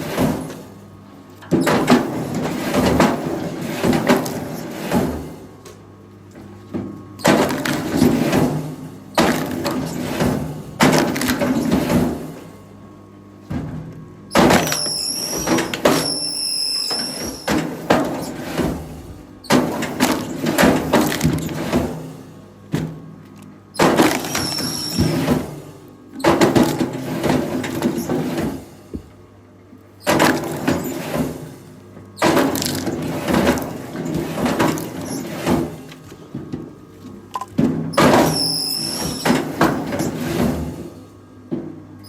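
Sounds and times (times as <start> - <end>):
high squeals: 14.6 - 17.5.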